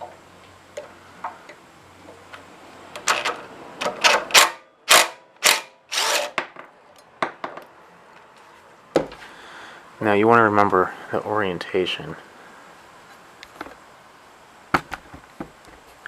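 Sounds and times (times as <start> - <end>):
cordless drill spinning: 5.4 - 6.3.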